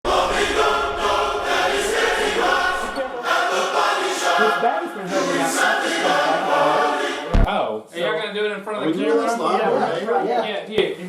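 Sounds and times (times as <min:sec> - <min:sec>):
a cappella choir singing: 0:00.0 - 0:07.5.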